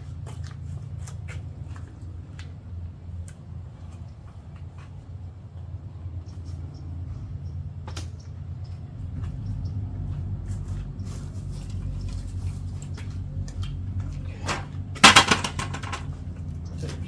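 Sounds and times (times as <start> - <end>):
steady low hum: 0.0 - 17.0
clicks knocks and rustling: 14.5 - 16.2.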